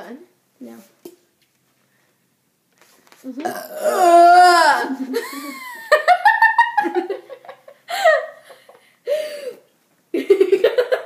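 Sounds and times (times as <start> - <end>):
young girls laughing: 4.7 - 9.3, 10.2 - 11.0.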